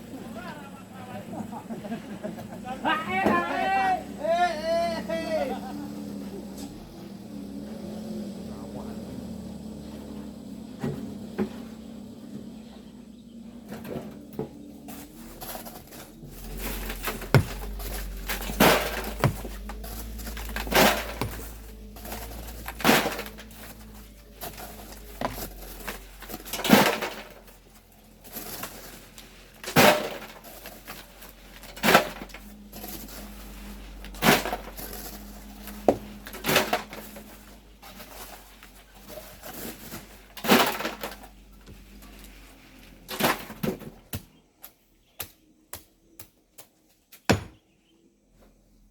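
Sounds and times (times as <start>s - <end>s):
hand tools striking sand and rock: 14.8s - 47.6s.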